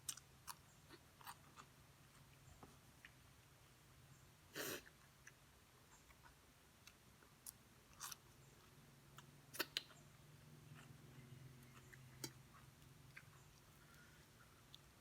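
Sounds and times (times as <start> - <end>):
person chewing: 0.0 - 2.3, 6.0 - 8.4, 10.7 - 14.9.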